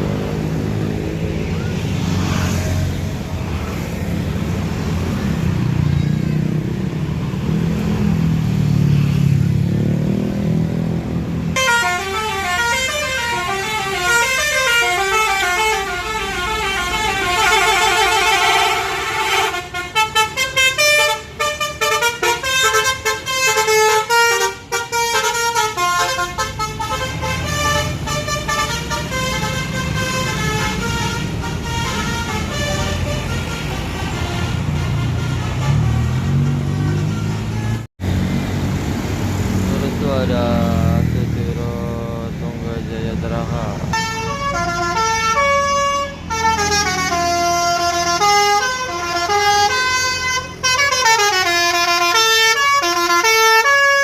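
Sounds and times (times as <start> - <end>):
bus engine running: 10.8 - 53.2
bus melody horn: 11.5 - 37.9, 43.9 - 54.0.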